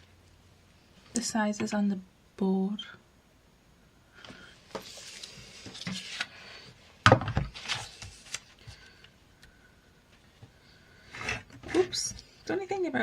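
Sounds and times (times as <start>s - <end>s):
paper rustling and sliding: 4.7s - 6.6s, 7.5s - 8.9s.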